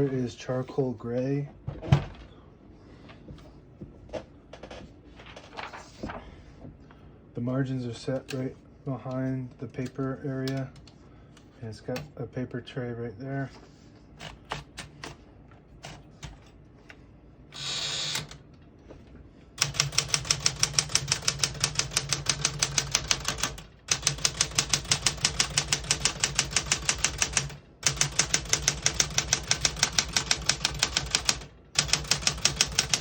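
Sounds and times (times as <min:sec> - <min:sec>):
typewriter typing: 0:19.6 - 0:33.0.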